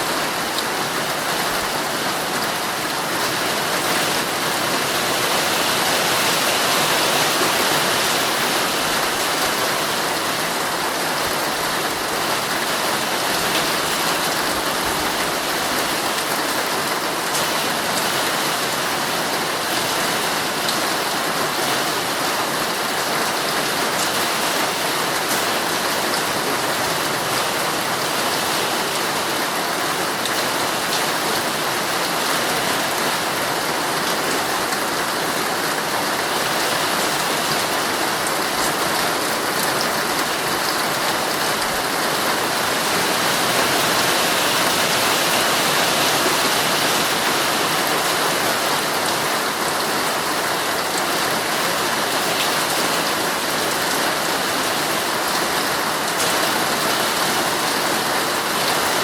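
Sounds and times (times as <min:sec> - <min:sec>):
heavy rain on a tent: 0:00.0 - 0:59.0.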